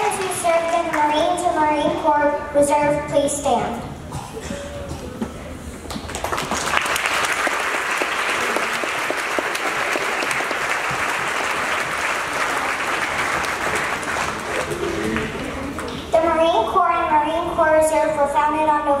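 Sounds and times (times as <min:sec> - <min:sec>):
audience applauding: 0:05.8 - 0:16.0.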